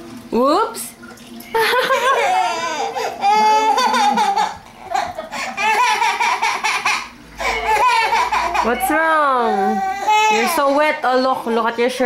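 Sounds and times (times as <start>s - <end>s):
child laughing and squealing: 1.9s - 8.8s.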